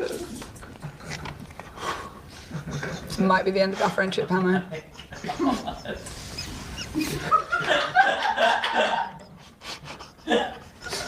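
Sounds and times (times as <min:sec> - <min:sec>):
person laughing hard: 0:04.7 - 0:11.0.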